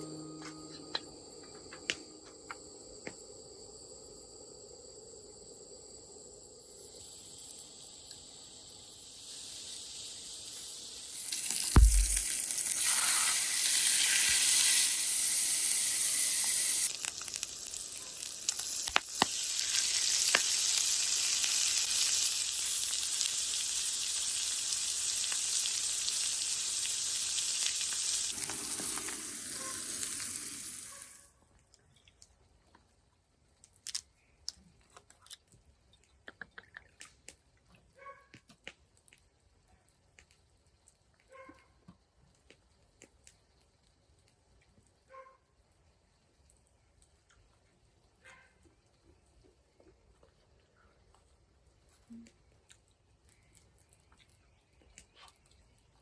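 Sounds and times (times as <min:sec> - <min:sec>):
food sizzling in a pan: 0:00.0 - 0:00.9, 0:06.2 - 0:31.3
dull thump: 0:11.7 - 0:12.2.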